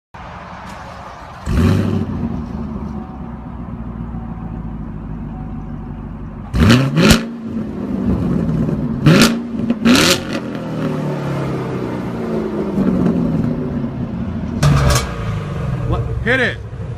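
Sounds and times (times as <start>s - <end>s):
car engine idling: 0.6s - 6.7s
car engine revving: 1.3s - 3.0s, 6.4s - 16.9s.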